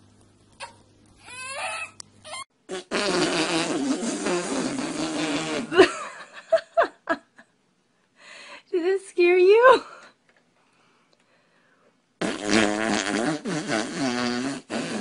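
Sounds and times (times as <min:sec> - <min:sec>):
long loud fart: 0:02.6 - 0:05.9, 0:12.2 - 0:15.0.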